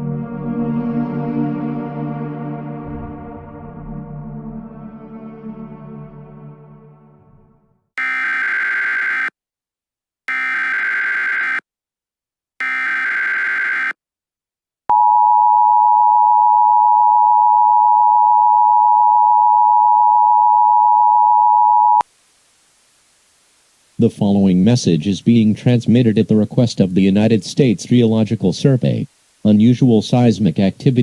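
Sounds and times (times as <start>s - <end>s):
steady two-tone attention signal: 8.0s - 9.3s, 10.3s - 11.6s, 12.6s - 13.9s
warbling data tones: 8.0s - 9.3s, 10.3s - 11.6s, 12.6s - 14.0s.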